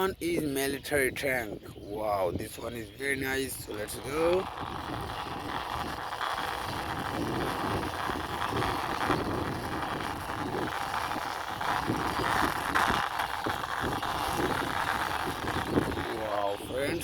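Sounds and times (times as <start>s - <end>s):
toy tank wheels rolling and scraping: 2.5s - 17.0s.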